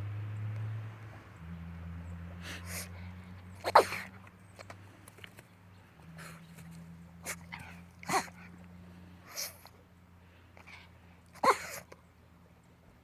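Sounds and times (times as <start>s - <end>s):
dog sneezing: 3.6s - 4.1s, 7.2s - 8.4s, 9.3s - 9.7s, 11.4s - 11.9s.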